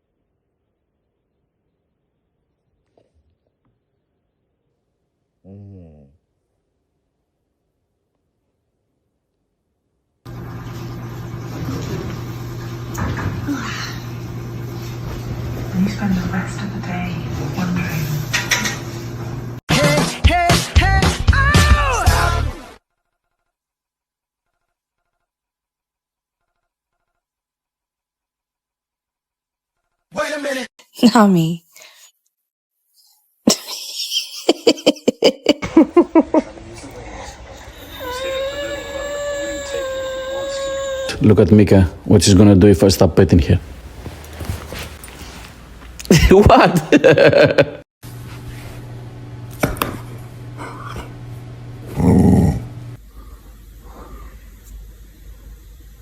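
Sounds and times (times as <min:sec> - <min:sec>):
dog growly grumble: 0:05.4 - 0:06.2, 0:36.5 - 0:41.2, 0:50.6 - 0:51.2, 0:51.8 - 0:52.9.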